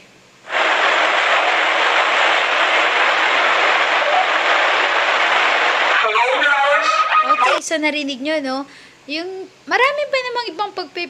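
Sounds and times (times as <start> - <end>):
loud static rushing noise: 0.0 - 7.8.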